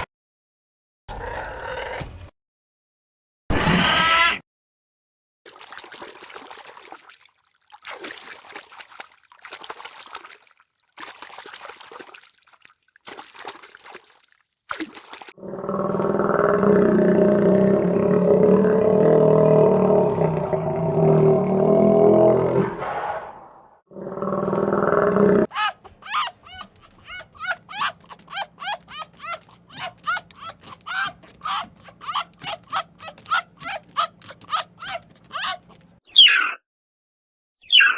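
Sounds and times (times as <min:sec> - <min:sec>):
trickling splashing water: 0:05.5 - 0:15.4, 0:25.6 - 0:36.0
small animal high calls: 0:25.5 - 0:36.6.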